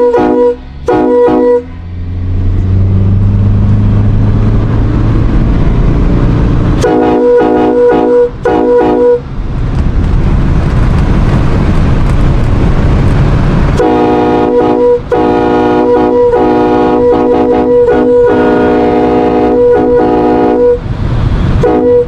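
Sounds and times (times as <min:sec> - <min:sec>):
train horn chord: 0:00.0 - 0:01.9, 0:06.8 - 0:09.2, 0:13.8 - 0:20.8, 0:21.6 - 0:22.0
low rumble: 0:00.0 - 0:18.4.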